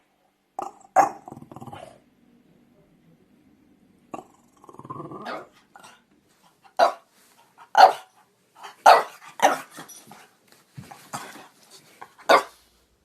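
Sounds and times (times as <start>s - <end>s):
dog growling: 0.6s - 2.0s, 4.1s - 6.0s
dog barking: 6.8s - 7.1s, 7.7s - 9.9s, 12.2s - 12.6s.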